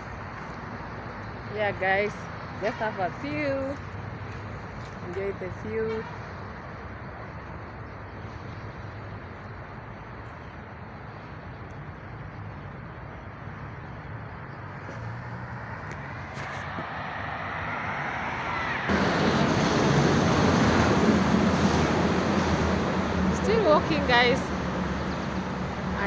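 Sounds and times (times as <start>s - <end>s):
vehicle passing: 14.6s - 26.0s.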